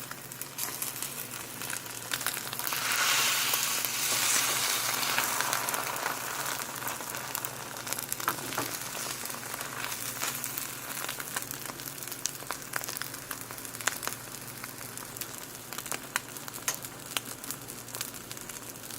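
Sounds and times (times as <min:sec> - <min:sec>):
fat popping and crackling: 0:00.0 - 0:14.2
eggs sizzling in a pan: 0:00.0 - 0:18.9.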